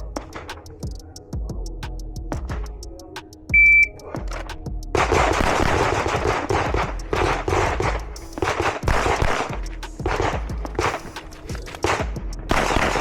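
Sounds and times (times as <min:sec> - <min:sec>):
pistol shots: 0:05.0 - 0:09.5, 0:10.1 - 0:13.0.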